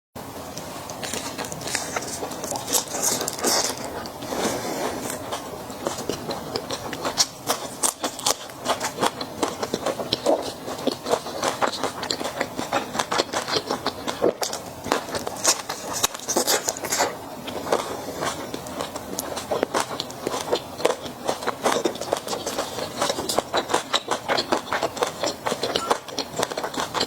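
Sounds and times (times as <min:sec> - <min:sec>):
chewing and crunching: 0:00.5 - 0:27.0
rustling and scraping: 0:00.6 - 0:06.2.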